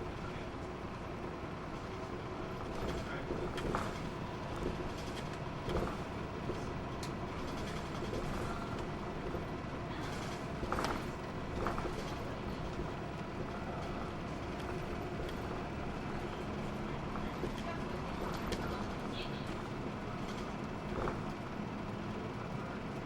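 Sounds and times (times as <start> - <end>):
bus body rattles and creaks: 0.0 - 23.0
bus engine and road noise: 0.0 - 23.0
faint drivetrain hum: 0.0 - 23.0.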